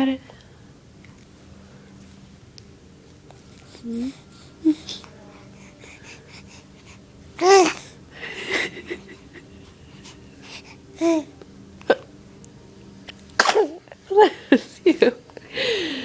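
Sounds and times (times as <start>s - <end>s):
baby sneezing: 7.4s - 7.8s, 13.4s - 13.8s
baby squeaky vocalizations: 7.4s - 7.8s.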